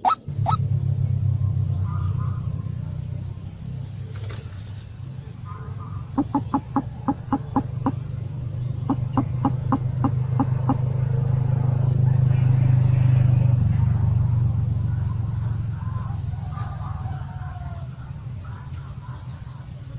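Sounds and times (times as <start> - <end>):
low hum: 0.0 - 19.8
fowl clucking: 5.5 - 8.0.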